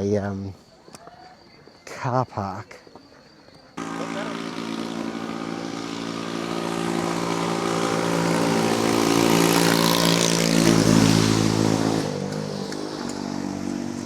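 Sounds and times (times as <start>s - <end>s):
vehicle engine passing by: 3.8s - 14.0s.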